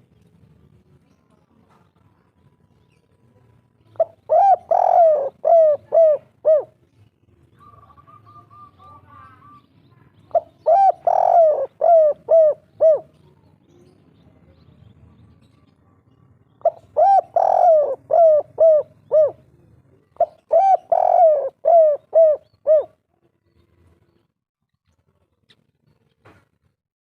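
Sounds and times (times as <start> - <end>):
dove cooing: 4.0 - 6.8, 7.6 - 9.6, 10.3 - 13.2, 16.6 - 19.6, 20.2 - 23.0.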